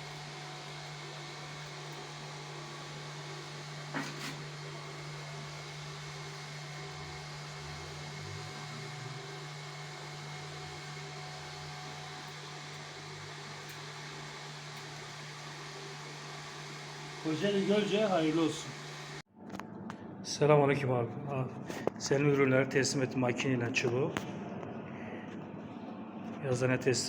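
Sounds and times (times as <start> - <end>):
cotton candy machine humming: 0.0 - 19.3.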